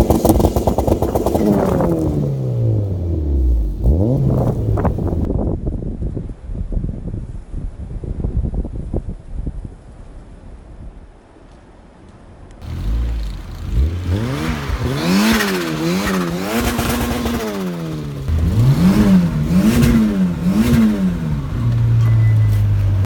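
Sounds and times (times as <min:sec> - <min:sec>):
car engine revving in blips: 0:00.0 - 0:05.3, 0:12.6 - 0:23.0
wind noise: 0:00.0 - 0:23.0.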